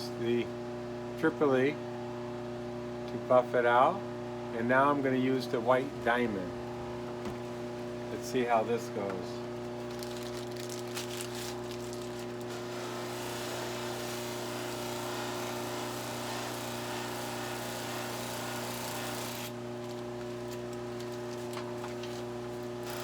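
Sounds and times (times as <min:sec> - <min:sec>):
buffing wheel motor humming: 0:12.5 - 0:19.6.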